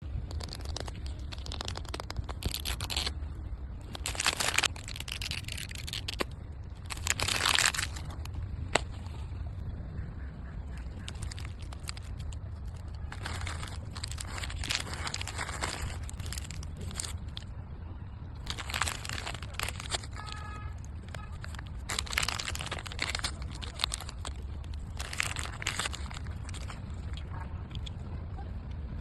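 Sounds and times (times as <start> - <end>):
plastic packaging crinkling and tearing: 0.1 - 8.9, 10.9 - 17.5, 18.4 - 27.9.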